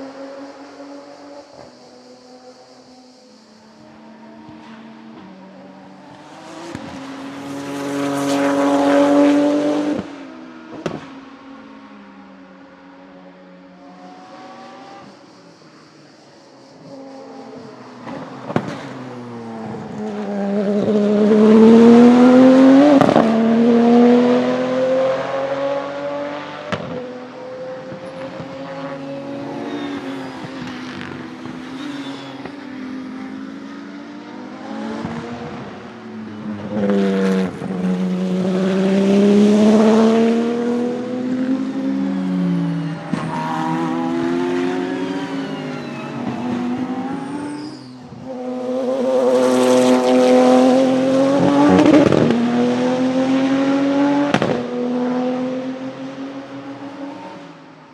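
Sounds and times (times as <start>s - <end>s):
race car engine accelerating: 6.0s - 11.0s, 17.6s - 57.6s.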